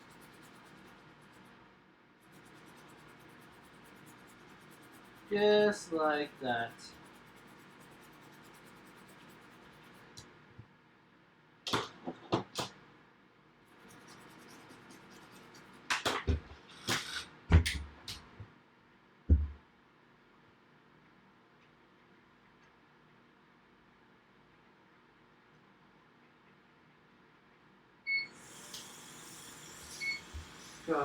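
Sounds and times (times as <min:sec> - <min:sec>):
toothbrush scrubbing: 0:00.0 - 0:01.6, 0:02.2 - 0:10.2, 0:13.7 - 0:15.9.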